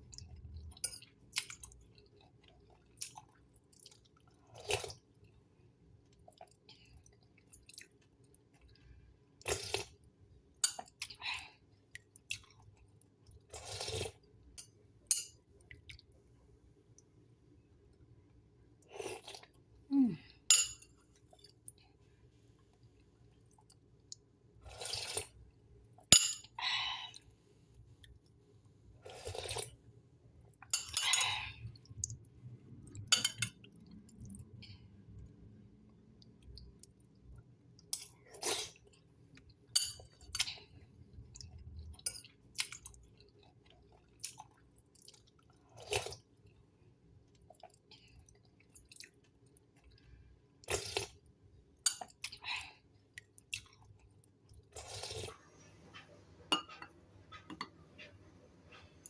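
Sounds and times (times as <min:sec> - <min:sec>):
dishes and utensils clinking: 0:20.5 - 0:20.9, 0:26.2 - 0:26.5, 0:30.8 - 0:31.3, 0:55.9 - 0:58.2.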